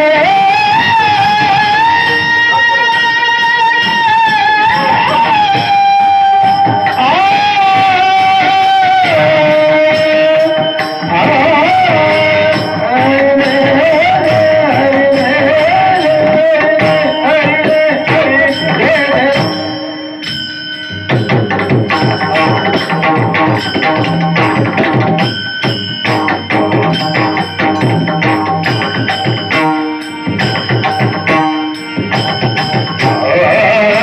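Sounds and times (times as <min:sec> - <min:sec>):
devotional singing melody: 0:00.0 - 0:21.0, 0:31.8 - 0:34.0
drum accompaniment: 0:00.0 - 0:34.0.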